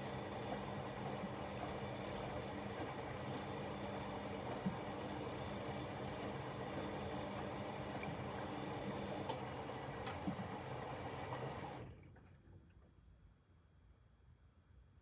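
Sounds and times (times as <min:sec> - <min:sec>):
washing machine motor hum: 0:00.0 - 0:11.9.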